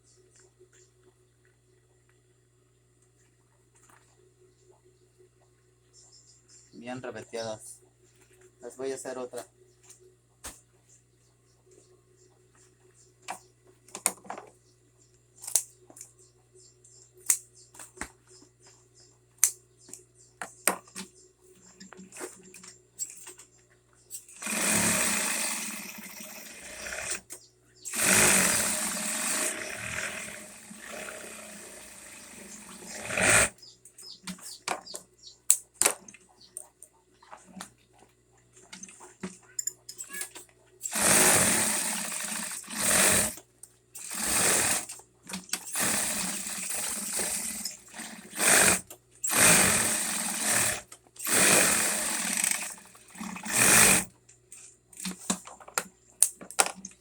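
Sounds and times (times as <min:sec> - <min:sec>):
sewing machine running: 0:24.3 - 0:27.3, 0:27.9 - 0:33.6, 0:40.9 - 0:43.4, 0:44.0 - 0:44.9, 0:45.6 - 0:54.1
clicks and handling sounds: 0:54.2 - 0:57.0.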